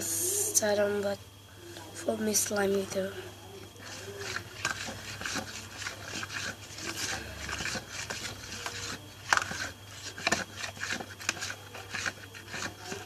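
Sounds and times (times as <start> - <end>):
hands rubbing and scraping: 3.8 - 13.0.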